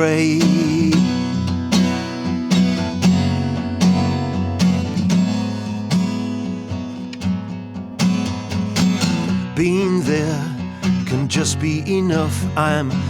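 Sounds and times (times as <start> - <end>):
person singing: 0.0 - 1.2, 9.5 - 13.0
acoustic guitar strumming: 0.0 - 13.0.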